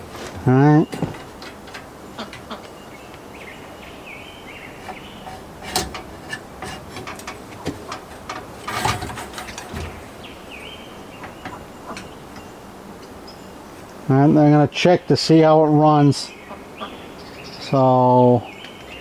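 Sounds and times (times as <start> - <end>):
bird chirping: 0.5 - 5.6, 9.3 - 13.9, 16.2 - 19.0
metal clicks and knocks: 0.8 - 2.8, 4.8 - 10.5, 11.1 - 13.2.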